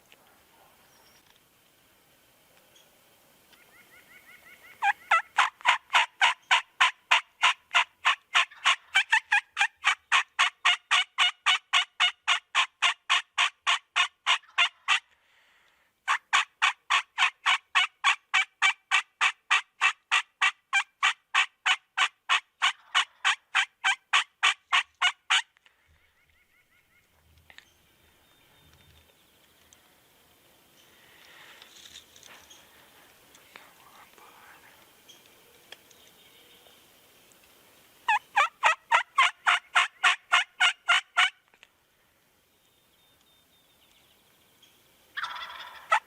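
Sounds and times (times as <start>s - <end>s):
turkey calls: 3.5s - 15.2s, 16.1s - 27.2s, 38.1s - 41.4s, 45.2s - 46.0s.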